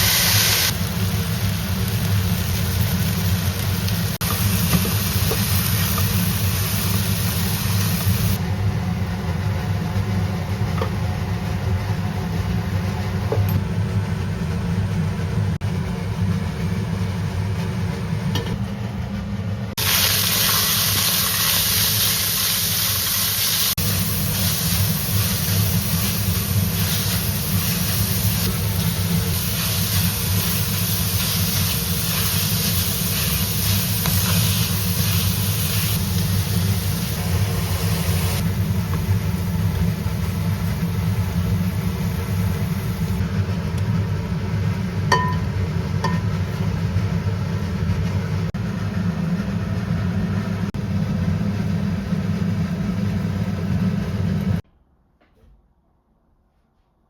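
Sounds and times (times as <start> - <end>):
food sizzling in a pan: 0.0 - 8.4, 19.8 - 43.2.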